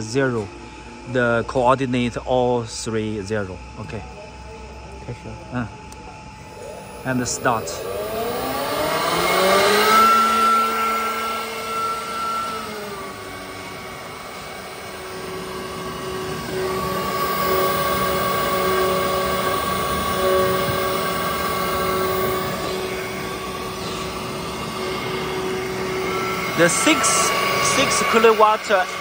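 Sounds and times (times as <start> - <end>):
motor tones: 0.0 - 29.0
router spindle whining: 0.0 - 29.0.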